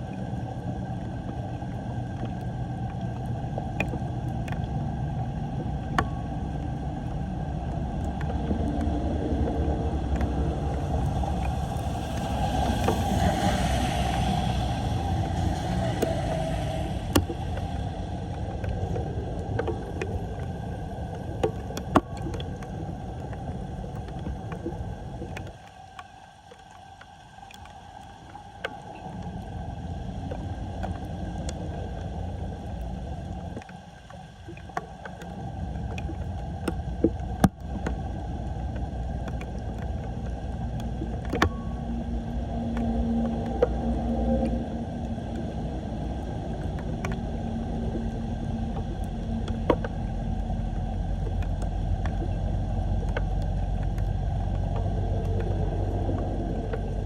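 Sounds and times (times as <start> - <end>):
water rushing into storm drain: 8.3 - 24.1.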